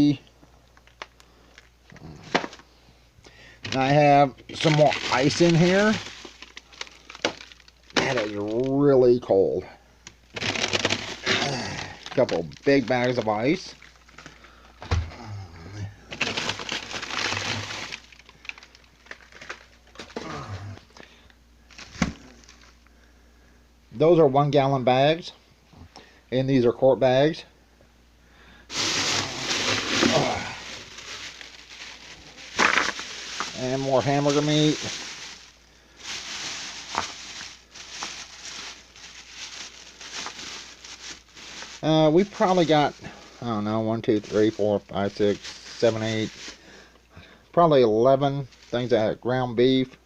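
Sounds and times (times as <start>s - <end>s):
plastic bags crinkling: 0.7s - 2.7s, 3.6s - 9.3s, 10.0s - 14.9s, 16.0s - 21.0s, 21.7s - 22.9s, 28.7s - 47.0s, 48.4s - 49.0s
frozen packages knocking: 2.2s - 2.7s, 3.6s - 8.7s, 10.3s - 15.2s, 16.1s - 20.4s, 28.7s - 43.1s.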